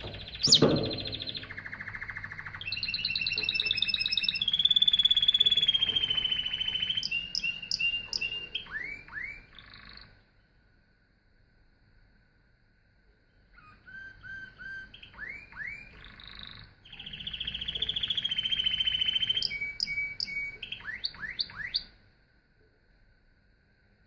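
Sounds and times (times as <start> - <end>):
canary singing: 0.0 - 10.2, 13.6 - 21.9.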